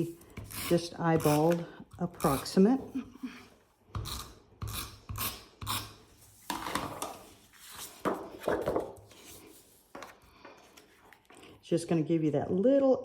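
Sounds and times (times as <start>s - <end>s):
paper rustling and tapping: 7.8s - 9.1s.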